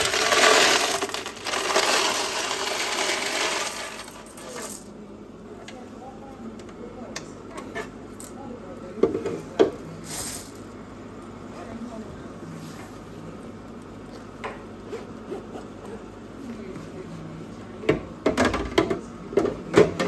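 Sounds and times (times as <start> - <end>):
coins pouring and rattling: 0.0 - 4.8, 10.1 - 10.7
coins clinking: 0.0 - 4.9, 10.1 - 10.7.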